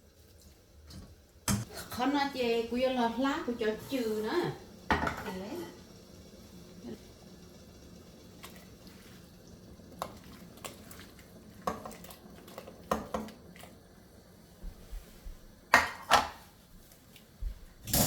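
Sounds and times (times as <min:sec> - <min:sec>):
kitchen utensils and dishes clattering: 0:15.7 - 0:16.5.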